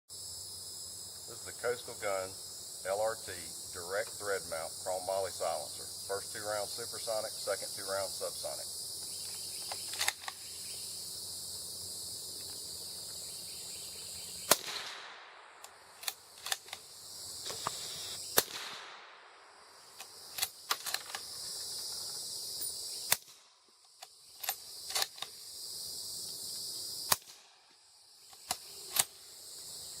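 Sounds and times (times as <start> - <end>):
insects chirring: 0.1 - 30.0
suppressed gunshots with echo: 14.4 - 20.9.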